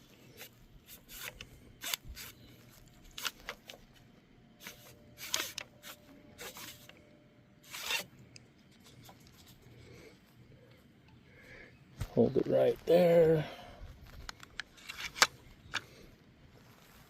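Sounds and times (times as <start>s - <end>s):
starter cord rasping: 0.0s - 3.8s, 4.6s - 7.0s, 7.6s - 8.1s.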